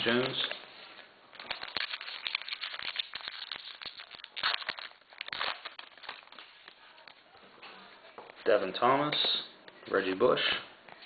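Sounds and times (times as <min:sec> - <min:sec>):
wrapper crinkling and tearing: 0:00.0 - 0:00.6, 0:01.3 - 0:07.4
cards rustling: 0:00.0 - 0:08.5.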